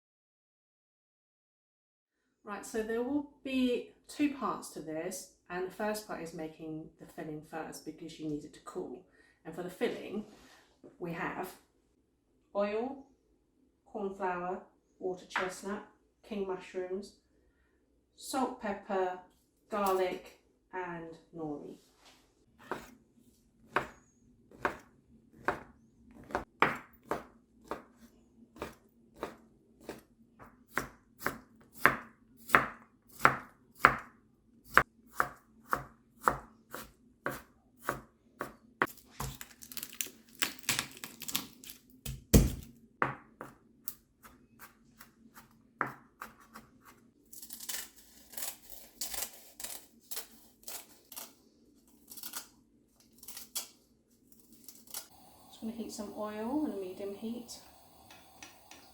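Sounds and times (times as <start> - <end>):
knife chopping on cutting board: 22.6 - 22.9, 24.6 - 34.1, 34.7 - 38.6, 44.6 - 47.0.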